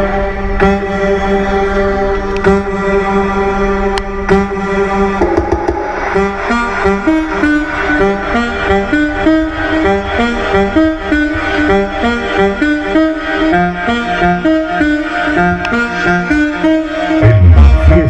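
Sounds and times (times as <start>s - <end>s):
string-like melody: 0.0s - 17.3s
bass line: 5.1s - 9.3s, 17.2s - 18.0s.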